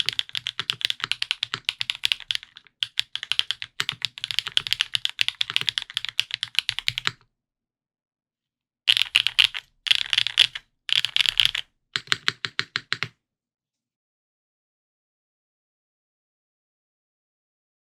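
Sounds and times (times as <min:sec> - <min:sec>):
mechanical keyboard typing: 0:00.0 - 0:07.2, 0:08.9 - 0:13.1.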